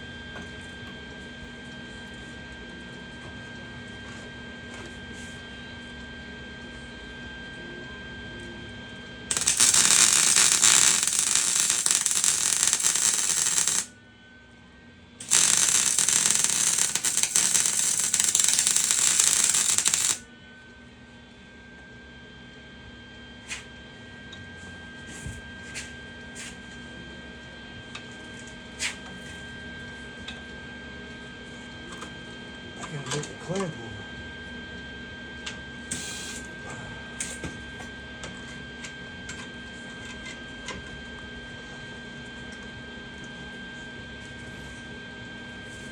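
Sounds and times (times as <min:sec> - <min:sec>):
electrical hum: 0:09.3 - 0:13.9, 0:15.2 - 0:20.2
welder arc crackling: 0:09.3 - 0:13.9, 0:15.2 - 0:20.2, 0:35.9 - 0:36.4.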